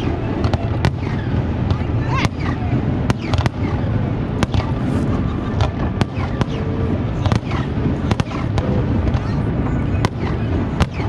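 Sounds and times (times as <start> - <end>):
fireworks cracks and bangs: 0.0 - 11.0
low rumble of booms: 0.0 - 11.0.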